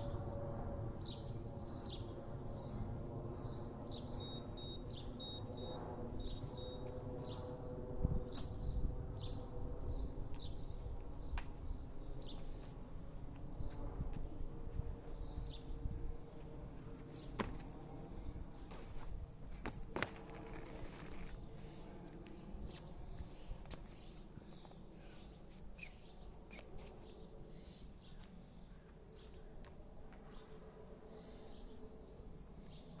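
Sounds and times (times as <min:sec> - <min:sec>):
bird chirping: 0:03.4 - 0:07.5, 0:23.9 - 0:28.3.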